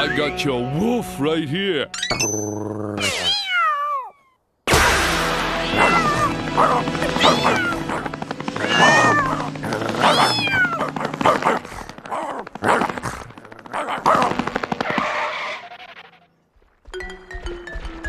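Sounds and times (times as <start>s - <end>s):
background music: 0.0s - 3.0s, 4.7s - 12.1s, 17.0s - 18.0s
cartoon cats yowling and screeching: 3.0s - 4.4s, 5.6s - 11.1s.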